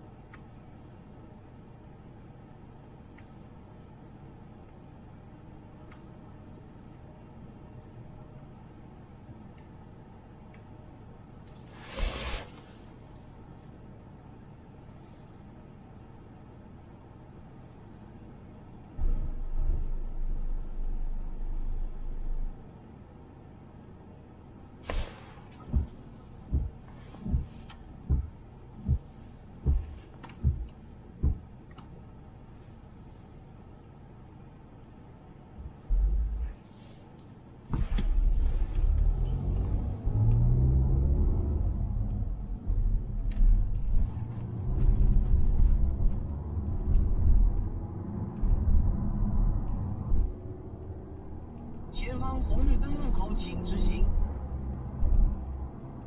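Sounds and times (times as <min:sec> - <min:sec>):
road and engine rumble: 0:00.0 - 0:56.0
dull low thumps: 0:19.0 - 0:22.6, 0:25.6 - 0:31.6, 0:35.6 - 0:36.6, 0:42.1 - 0:47.8, 0:54.1 - 0:55.7.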